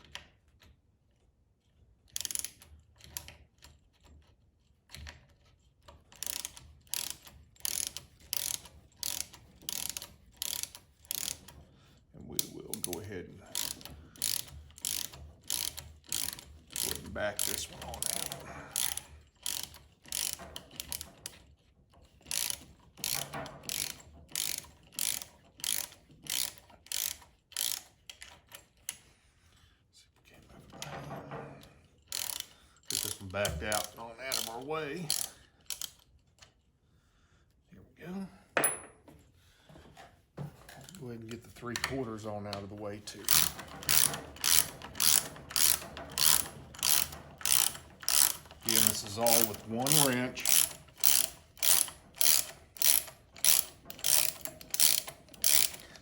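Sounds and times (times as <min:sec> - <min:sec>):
ratchet pawl clicking: 0:02.0 - 0:29.0, 0:32.0 - 0:36.6, 0:43.1 - 0:56.0.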